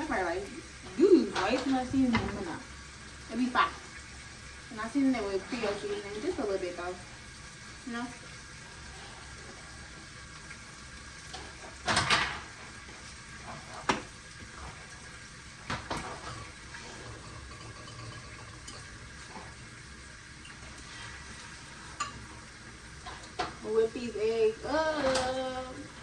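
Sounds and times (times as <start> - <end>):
bacon and sausage frying: 0.0 - 26.0
kitchen knocks and clatters: 0.8 - 2.6, 11.2 - 19.8, 20.4 - 23.7, 24.8 - 25.5.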